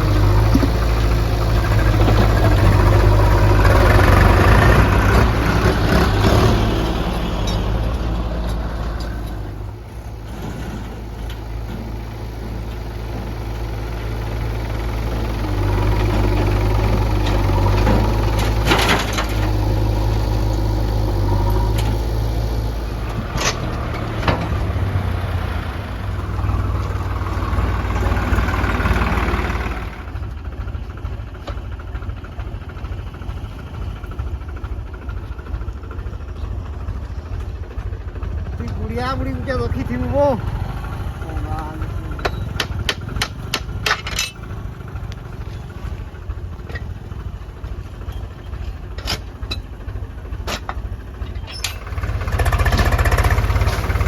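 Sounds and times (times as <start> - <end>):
diesel engine under load: 0.0 - 54.0
sharp knocks: 42.2 - 44.2.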